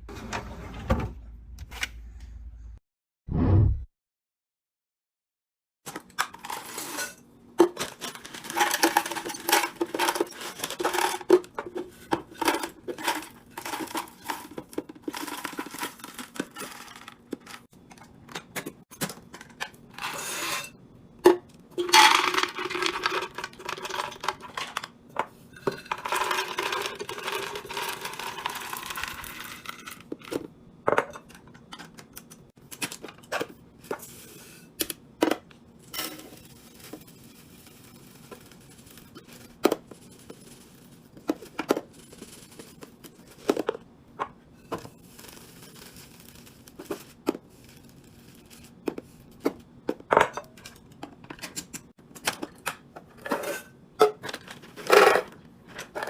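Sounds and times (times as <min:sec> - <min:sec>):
containers clicking and knocking: 0:07.6 - 0:19.8, 0:21.2 - 0:34.0.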